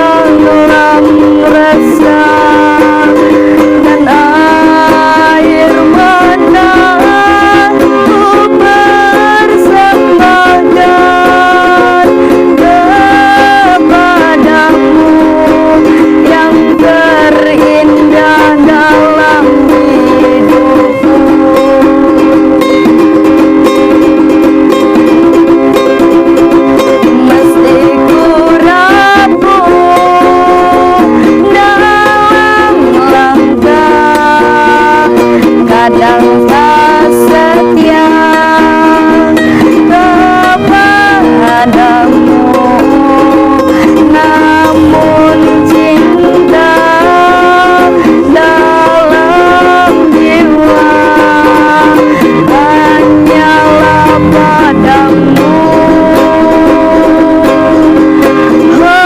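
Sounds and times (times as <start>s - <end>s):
held scooping melody notes: 0.0s - 59.0s
plucked ukulele or guitar: 0.0s - 59.0s.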